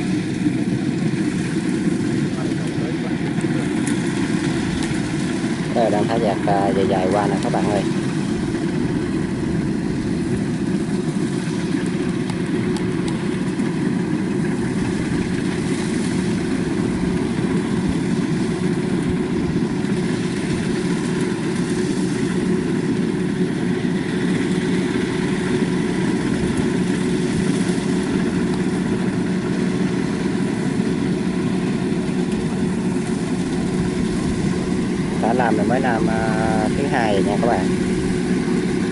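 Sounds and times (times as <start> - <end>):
combine harvester droning: 0.0 - 38.9.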